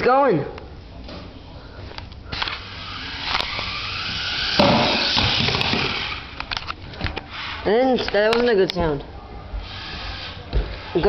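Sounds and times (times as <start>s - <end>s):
toy car motor whirring: 2.4s - 6.4s.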